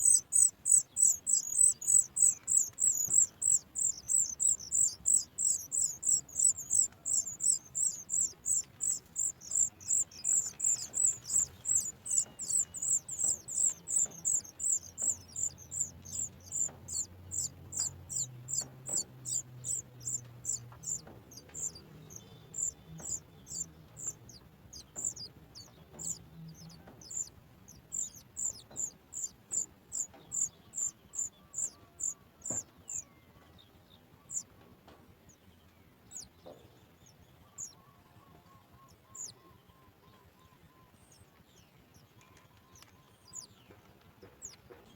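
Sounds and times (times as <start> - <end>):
nestling begging calls: 0.0 - 33.1, 38.9 - 39.4.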